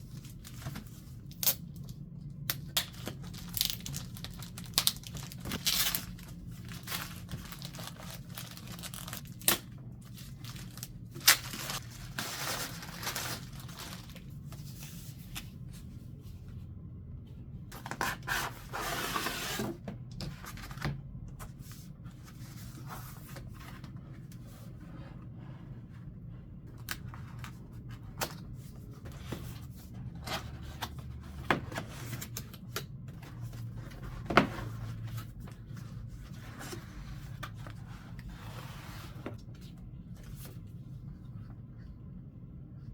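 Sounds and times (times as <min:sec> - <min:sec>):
packaging tearing and crinkling: 0:02.8 - 0:09.6.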